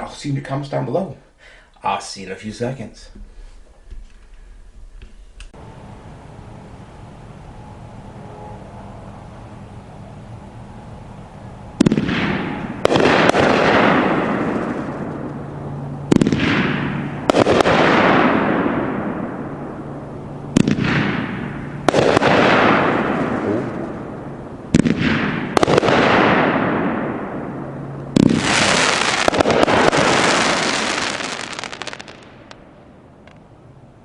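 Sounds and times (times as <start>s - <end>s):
firework bangs: 11.8s - 33.4s
firework crackle and hiss: 20.5s - 23.9s, 24.7s - 27.0s, 28.2s - 32.6s.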